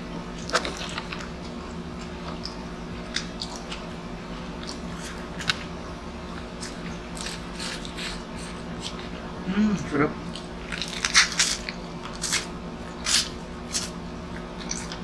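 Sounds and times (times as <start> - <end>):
steady low hum: 0.0 - 15.0
person chewing and biting: 0.4 - 15.0.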